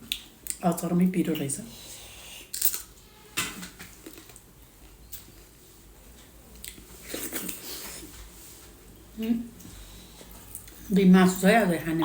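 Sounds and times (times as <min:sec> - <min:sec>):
person chewing food: 0:04.0 - 0:05.4, 0:06.5 - 0:08.2.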